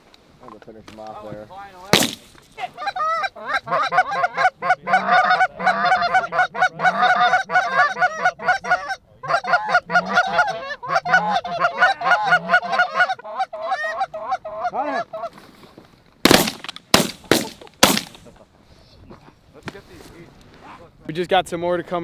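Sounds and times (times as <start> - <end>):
geese honking and clucking: 2.7 - 15.4.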